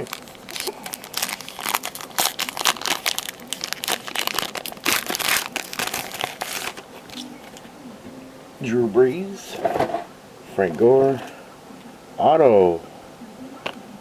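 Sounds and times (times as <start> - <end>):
foil wrapper tearing and crinkling: 0.0 - 7.2.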